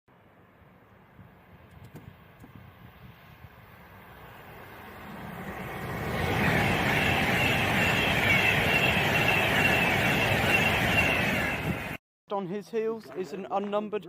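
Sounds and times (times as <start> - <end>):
train wheels rumbling on rails: 1.2 - 12.0
high wavering whine: 3.6 - 12.0.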